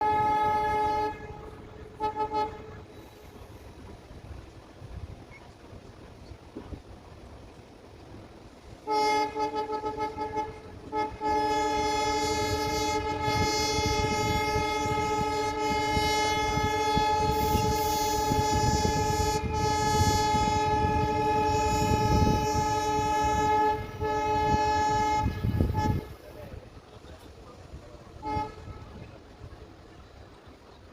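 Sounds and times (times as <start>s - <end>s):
locomotive horn: 0.0s - 3.3s, 8.8s - 26.4s, 28.1s - 29.1s
low rumble of moving train: 0.0s - 30.9s.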